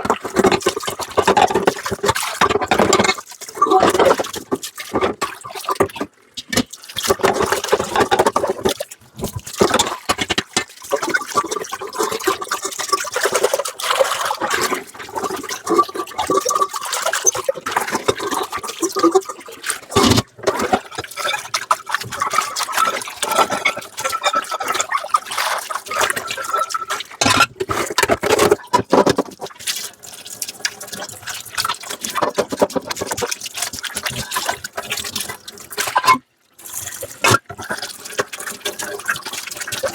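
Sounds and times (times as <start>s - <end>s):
tap water running and splashing: 0.0s - 39.9s
dishes and utensils clinking: 25.9s - 27.6s, 35.9s - 36.2s.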